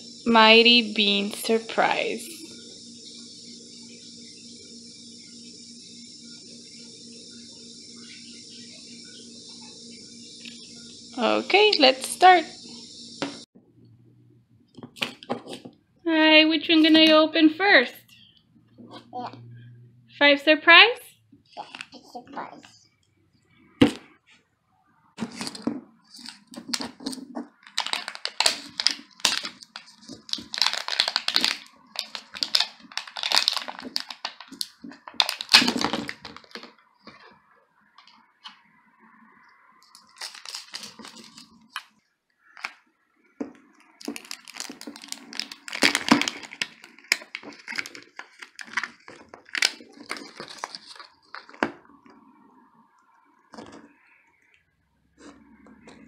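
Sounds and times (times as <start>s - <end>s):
plastic wrapping crinkling: 25.2s - 37.3s, 39.8s - 42.0s, 43.7s - 51.9s.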